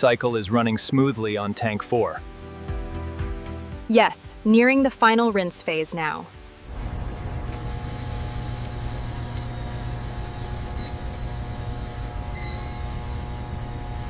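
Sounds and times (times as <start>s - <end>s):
factory machinery drone: 6.7s - 14.0s.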